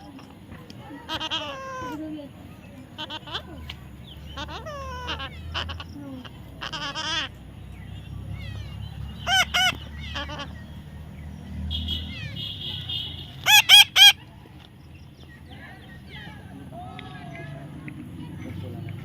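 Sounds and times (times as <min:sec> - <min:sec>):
parrot shrill calls: 0:08.4 - 0:10.5, 0:13.4 - 0:14.2.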